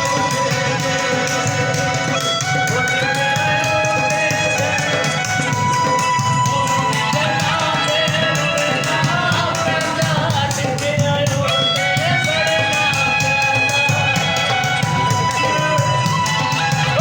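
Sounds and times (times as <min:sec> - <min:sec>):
song with singing over a beat: 0:00.0 - 0:17.0.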